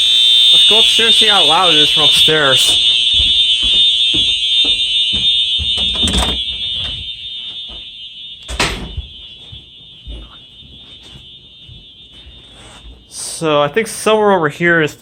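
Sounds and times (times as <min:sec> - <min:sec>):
fire alarm horn: 0:00.0 - 0:14.8
footsteps: 0:00.6 - 0:13.1.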